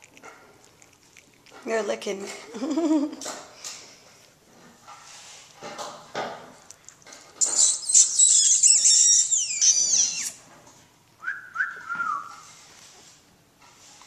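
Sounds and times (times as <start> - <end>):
puppies squealing shrilly: 7.4 - 10.4
puppy whines: 7.4 - 10.4.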